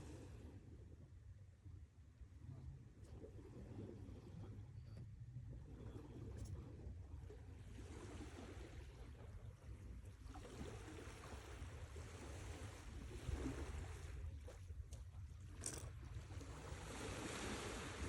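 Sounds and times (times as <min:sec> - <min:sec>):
sea waves washing in: 0:16.4 - 0:18.0.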